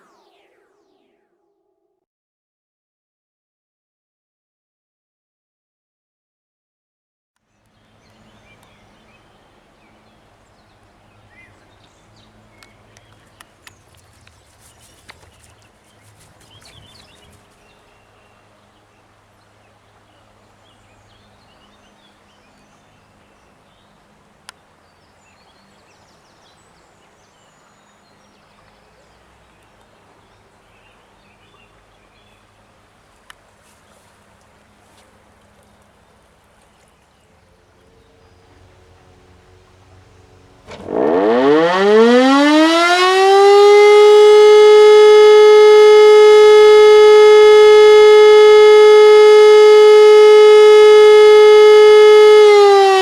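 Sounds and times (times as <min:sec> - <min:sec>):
small birds chirping: 0:07.5 - 0:42.4
low steady hum: 0:07.5 - 0:53.0.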